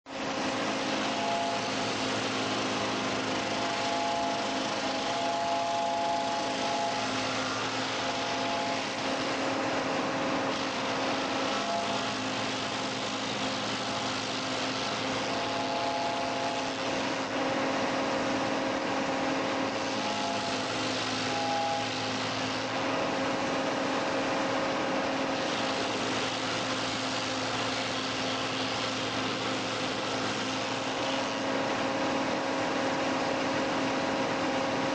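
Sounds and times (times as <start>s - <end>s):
stump grinder running: 0.1s - 32.4s
tractor engine drone: 0.1s - 34.9s.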